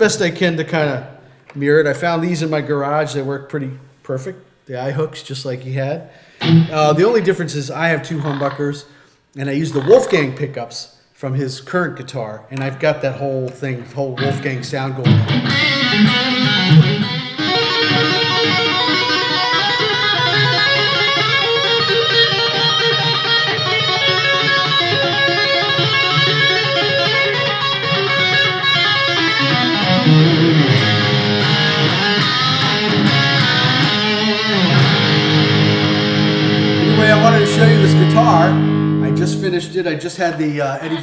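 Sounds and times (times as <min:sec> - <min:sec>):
electric guitar playing: 0:06.4 - 0:07.2, 0:14.2 - 0:41.0.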